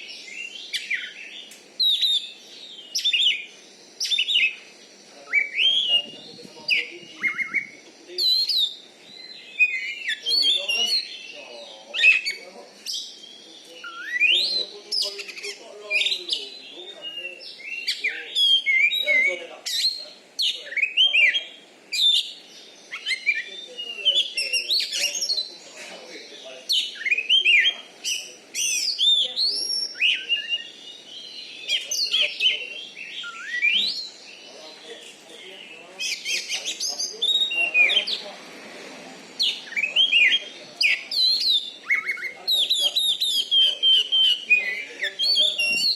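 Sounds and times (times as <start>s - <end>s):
bird singing chattering whistles: 0.0s - 38.3s, 39.4s - 45.9s.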